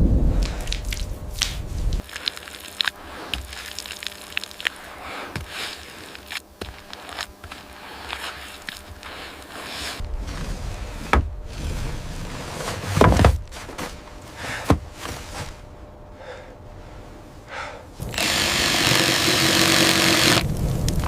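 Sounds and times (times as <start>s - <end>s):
wooden knocks and thuds: 11.0s - 11.4s, 12.8s - 13.9s, 14.6s - 15.0s
power tool running: 18.0s - 20.4s.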